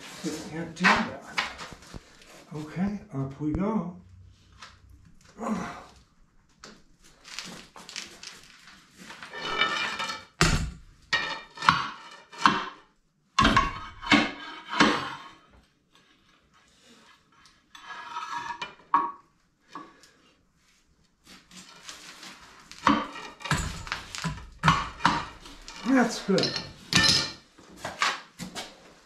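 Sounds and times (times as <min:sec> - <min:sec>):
steel plates clanking on concrete: 0:09.3 - 0:10.4, 0:22.8 - 0:27.4.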